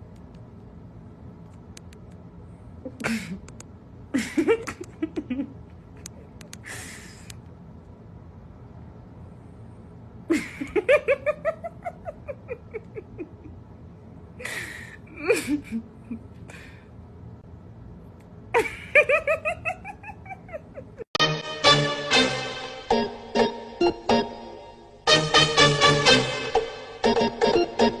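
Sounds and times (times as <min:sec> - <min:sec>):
high-pitched laughter: 0:04.2 - 0:05.5, 0:10.3 - 0:13.6, 0:18.6 - 0:21.1.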